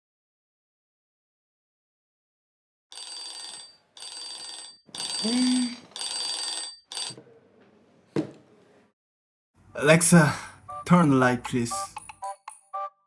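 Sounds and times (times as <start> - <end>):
alarm ringing: 2.9 - 7.2, 10.6 - 13.0.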